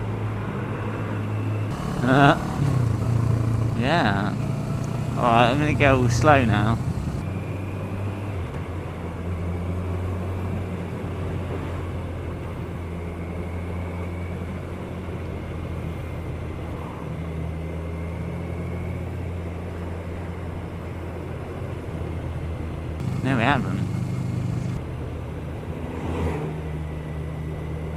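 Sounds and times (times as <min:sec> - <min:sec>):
motorcycle engine running: 0:01.7 - 0:07.2, 0:23.0 - 0:24.8.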